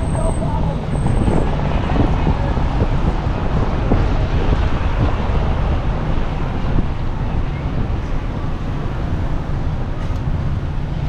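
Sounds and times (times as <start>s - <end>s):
street traffic: 0.0s - 11.0s
wind buffeting microphone: 0.0s - 11.0s.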